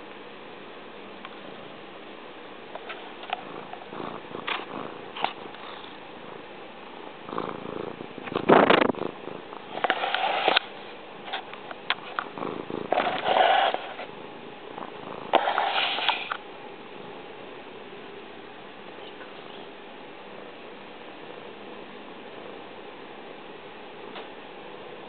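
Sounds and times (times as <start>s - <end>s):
small snuffles and clicks: 2.8s - 6.0s, 15.3s - 16.4s.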